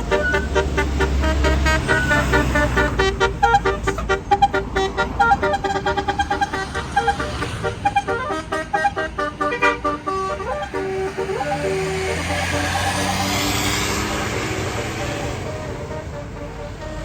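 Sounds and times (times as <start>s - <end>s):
musical bus horn playing a tune: 0.0s - 17.0s.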